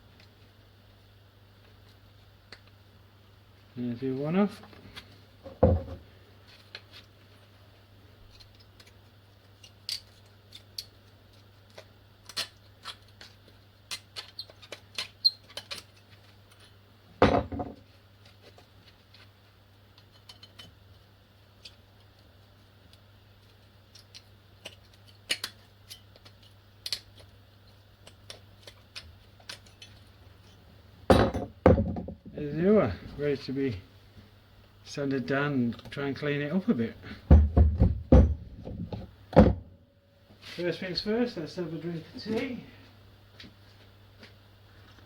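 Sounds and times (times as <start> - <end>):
steady low hum: 16.1 - 45.0.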